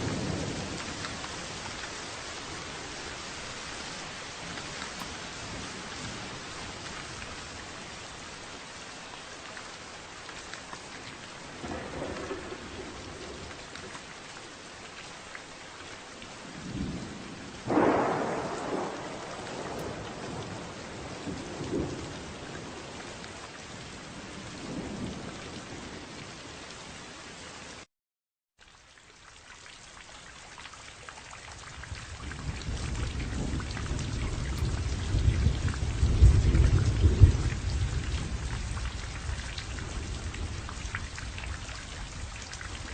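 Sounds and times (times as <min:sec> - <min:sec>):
thunder rumbling: 0:00.0 - 0:03.2, 0:11.5 - 0:14.0, 0:16.5 - 0:23.0, 0:32.0 - 0:42.9
steady rain: 0:00.0 - 0:27.9, 0:28.6 - 0:42.9
thunderclap: 0:11.6 - 0:13.6, 0:16.6 - 0:22.7, 0:32.2 - 0:41.5.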